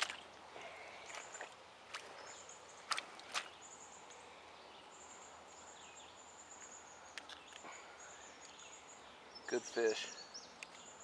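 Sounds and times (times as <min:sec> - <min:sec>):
creekside ambience: 0:00.0 - 0:11.0.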